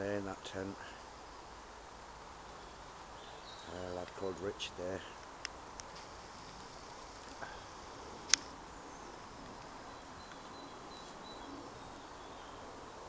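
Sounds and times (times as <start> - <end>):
steady outdoor hiss: 0.0 - 13.0
faint high bird calls: 6.7 - 13.0
sharp click: 8.3 - 8.5.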